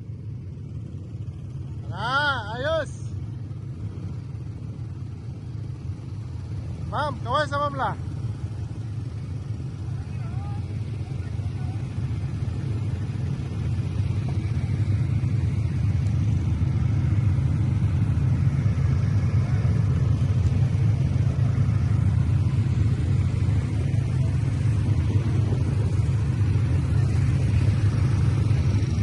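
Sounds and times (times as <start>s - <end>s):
atv engine rumbling: 0.0s - 29.0s.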